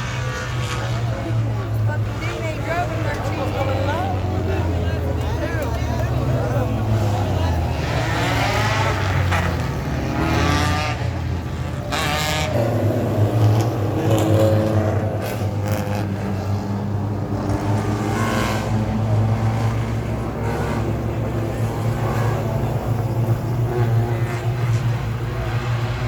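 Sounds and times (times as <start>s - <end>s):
race car engines: 0.0s - 26.0s.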